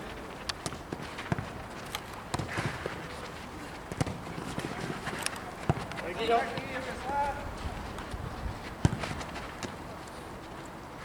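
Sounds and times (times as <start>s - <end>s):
outdoor background noise: 0.0s - 11.0s
ball kicks and running thuds: 0.6s - 9.9s.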